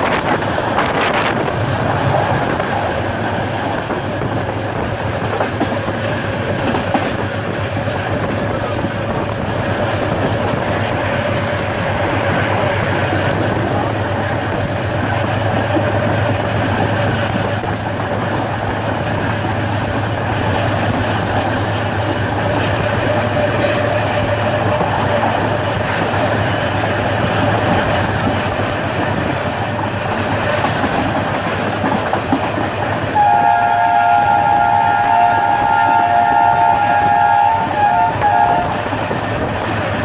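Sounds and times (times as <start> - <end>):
train wheels clattering on rails: 0.0 - 40.0
locomotive horn: 22.4 - 25.6, 33.1 - 39.0.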